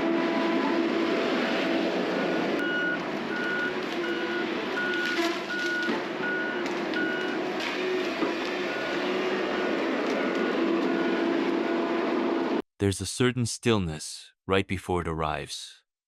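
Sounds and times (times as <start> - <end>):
heavy machine engine running: 0.0 - 12.6
reversing alarm beeping: 2.2 - 7.4.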